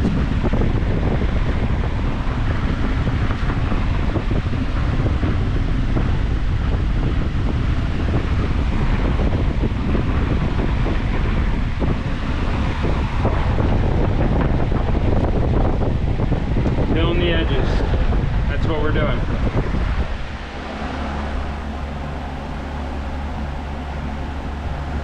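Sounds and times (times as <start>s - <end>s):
wind buffeting the microphone: 0.0s - 25.0s.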